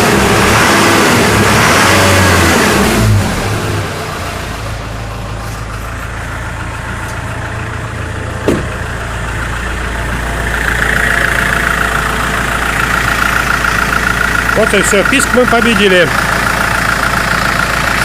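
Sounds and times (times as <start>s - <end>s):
diesel engine idling: 0.0s - 18.0s
engine knock: 5.8s - 18.0s
high-pitched rattle: 5.8s - 18.0s.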